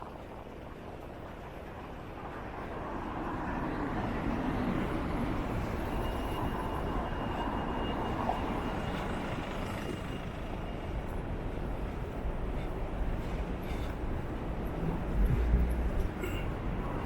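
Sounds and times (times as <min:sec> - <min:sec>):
wind buffeting microphone: 0:00.0 - 0:17.0
faint high whine: 0:02.2 - 0:11.4.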